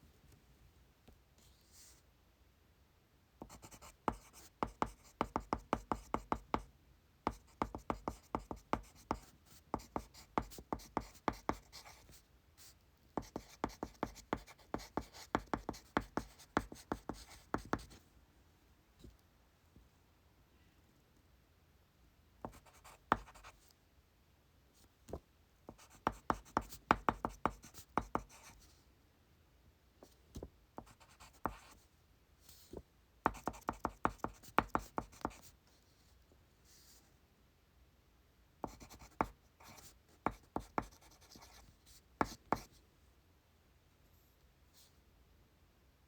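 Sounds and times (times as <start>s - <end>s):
pencil writing on paper: 3.4s - 6.7s, 7.3s - 12.2s, 13.2s - 18.0s, 22.4s - 23.6s, 25.7s - 28.6s, 30.8s - 31.8s, 33.3s - 35.5s, 38.6s - 42.7s.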